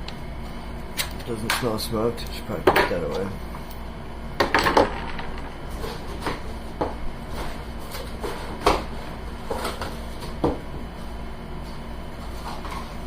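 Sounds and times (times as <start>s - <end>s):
items knocking and clattering: 4.4s - 7.0s.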